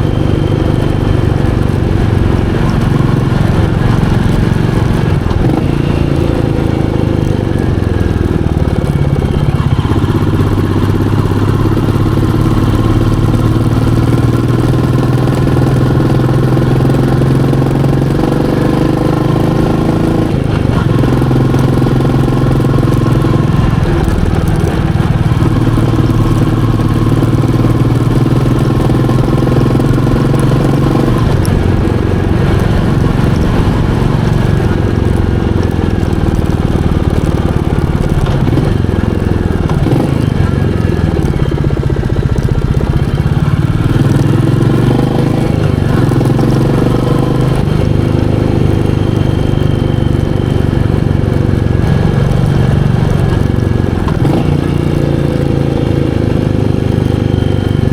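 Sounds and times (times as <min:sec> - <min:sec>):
motorcycle engine running: 0:00.0 - 0:57.9.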